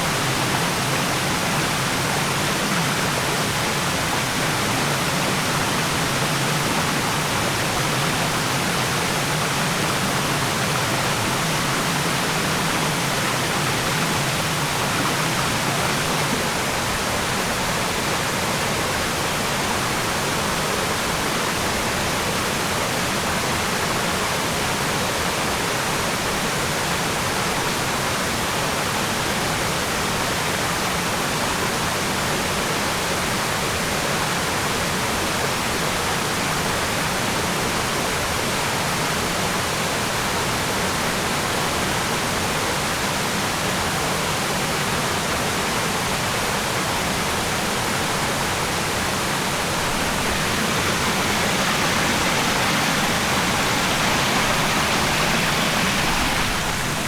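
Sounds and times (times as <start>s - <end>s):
waterfall rushing: 0.0s - 20.6s, 44.1s - 57.0s.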